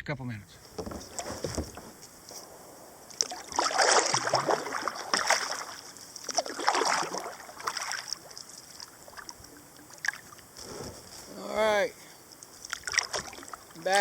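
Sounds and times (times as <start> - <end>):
kayak paddle splashing water: 0.6 - 14.0.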